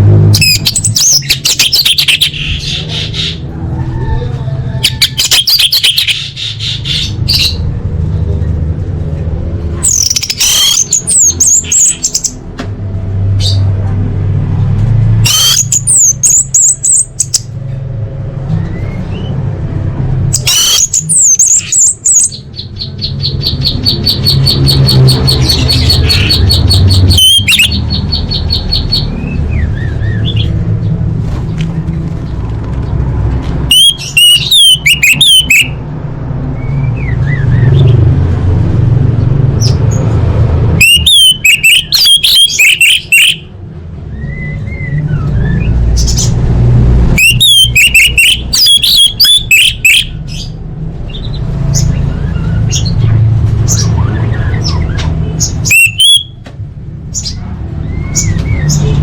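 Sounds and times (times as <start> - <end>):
bird rapid trill: 0.3 - 3.5, 4.8 - 7.7, 9.8 - 12.4, 15.2 - 17.5, 20.3 - 30.6, 33.6 - 35.8, 40.8 - 43.5, 47.2 - 56.4
bird singing whistled phrases: 27.0 - 27.8, 33.7 - 35.8, 40.8 - 43.4, 47.2 - 50.2, 55.6 - 56.4.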